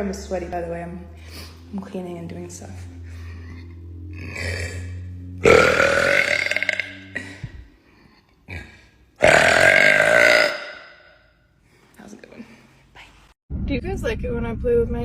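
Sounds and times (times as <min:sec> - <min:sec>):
woman belching: 0:03.3 - 0:07.5, 0:08.3 - 0:11.2.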